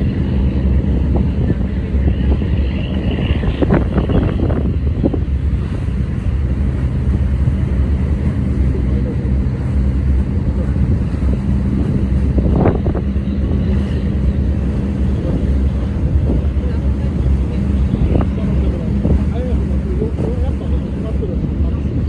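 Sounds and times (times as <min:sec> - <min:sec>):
boat diesel engines droning: 0:00.0 - 0:22.0.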